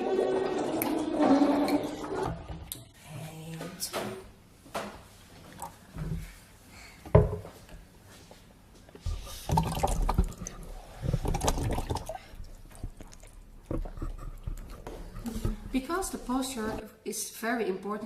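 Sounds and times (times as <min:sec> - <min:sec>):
bubbles gurgling in water: 0:09.4 - 0:13.9.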